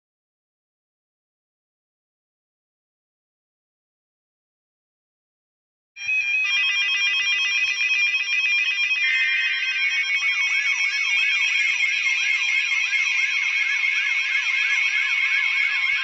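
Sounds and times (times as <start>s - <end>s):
falling whoop siren: 6.0s - 16.0s.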